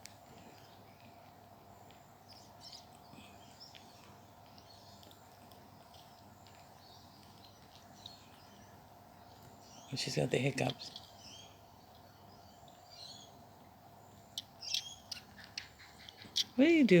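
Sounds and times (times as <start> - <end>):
soft ticks: 0.0 - 8.7, 14.3 - 16.6.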